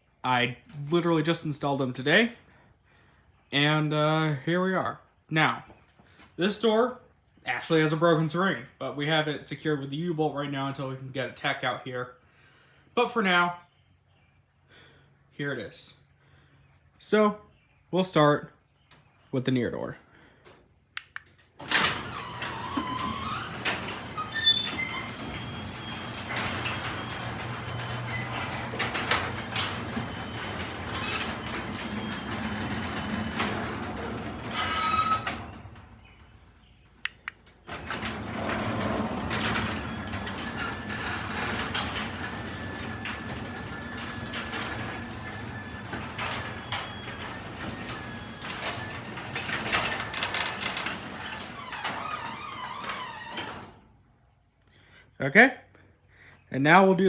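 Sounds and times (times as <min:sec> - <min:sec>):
clicks: 0:21.0 - 0:22.0, 0:37.0 - 0:40.2
door rattling and squeaking: 0:21.4 - 0:54.0
garage door opener running: 0:21.6 - 0:36.6, 0:37.4 - 0:54.0.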